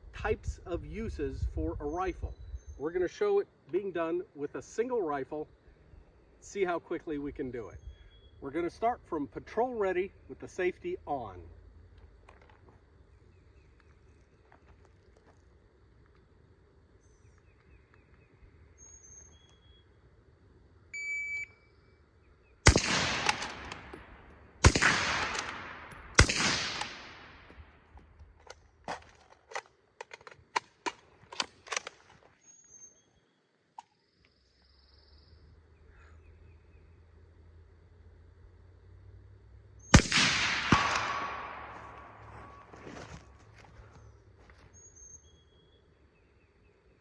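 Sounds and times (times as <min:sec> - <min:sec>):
rifle shots echoing: 0:22.6 - 0:27.9, 0:39.9 - 0:42.7.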